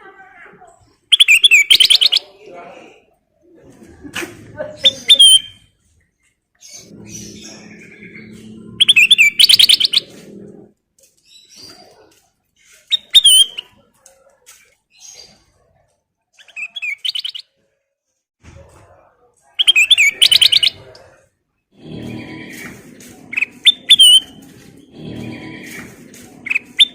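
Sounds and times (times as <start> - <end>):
bulbul chattering calls: 6.7 - 10.2.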